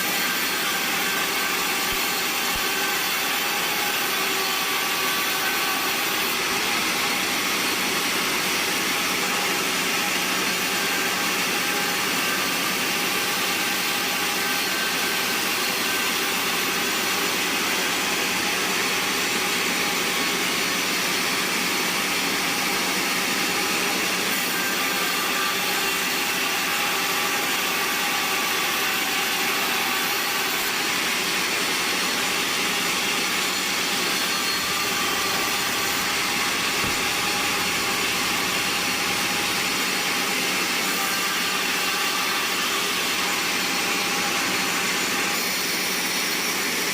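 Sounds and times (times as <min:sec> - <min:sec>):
band sawmill cutting log: 0:00.0 - 0:46.9.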